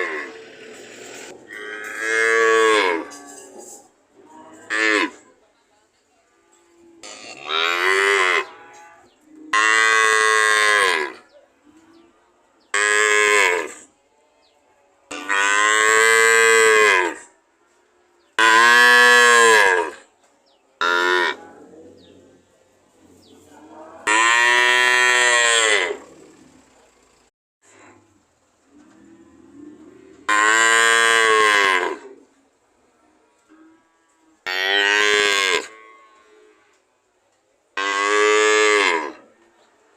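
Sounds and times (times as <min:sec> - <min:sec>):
cow mooing: 0:01.4 - 0:03.5, 0:06.6 - 0:11.2, 0:18.4 - 0:20.0, 0:20.8 - 0:22.1, 0:23.5 - 0:26.4, 0:28.7 - 0:32.2, 0:33.6 - 0:36.8, 0:37.8 - 0:39.4.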